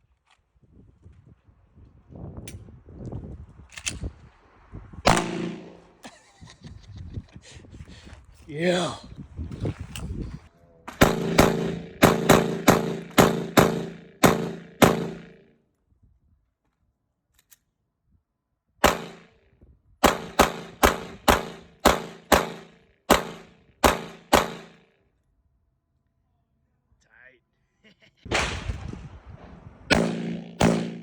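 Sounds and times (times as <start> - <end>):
single gunshots: 5.1 - 6.0, 10.9 - 15.4, 18.8 - 19.3, 20.0 - 24.8, 28.3 - 29.0, 29.9 - 31.0.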